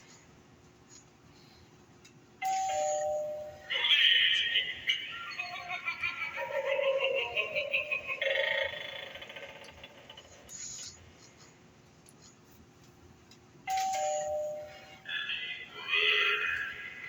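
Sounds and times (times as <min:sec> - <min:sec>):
two-note doorbell chime: 0:02.4 - 0:03.6, 0:13.7 - 0:15.0.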